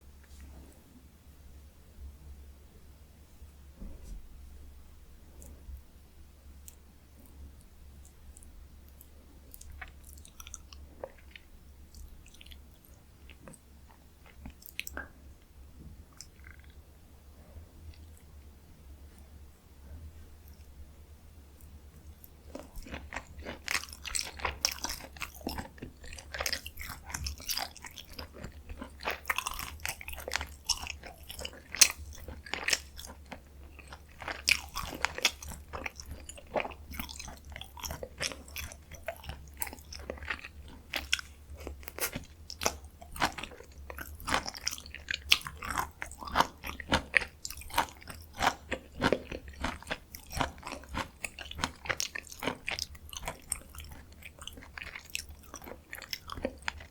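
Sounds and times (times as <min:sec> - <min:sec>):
close chewing and biting: 0:08.0 - 0:15.2, 0:16.1 - 0:16.8, 0:21.6 - 0:56.9
crunchy bites: 0:22.5 - 0:56.9.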